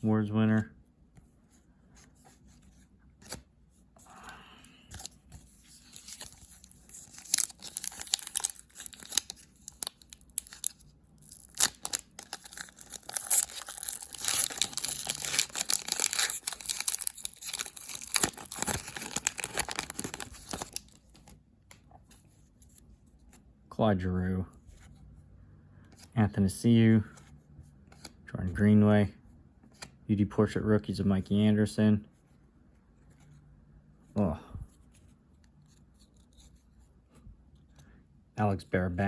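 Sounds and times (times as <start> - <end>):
wrapper tearing and crinkling: 5.8 - 21.0.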